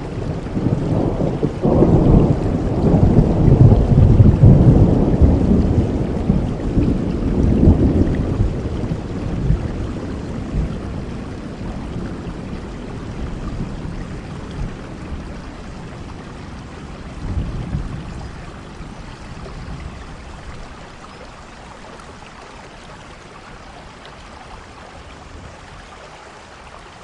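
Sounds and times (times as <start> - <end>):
thunder rumbling: 0.0 - 21.0
steady rain: 0.0 - 27.0.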